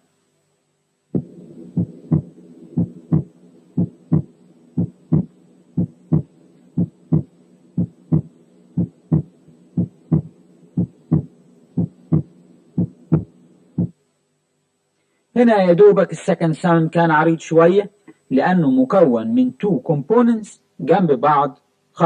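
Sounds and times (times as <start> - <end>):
heartbeat: 1.2 - 14.0.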